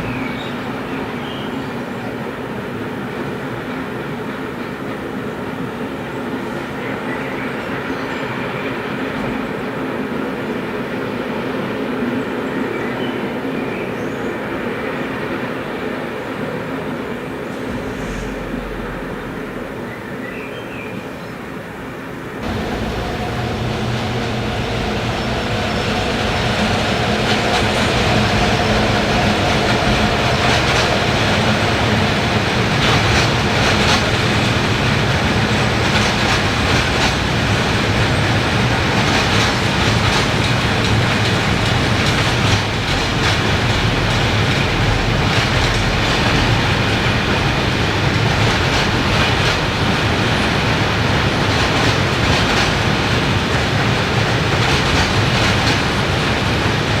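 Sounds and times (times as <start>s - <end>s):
freight train rolling past: 0.0s - 57.0s
wheels clattering over rail joints: 22.4s - 57.0s.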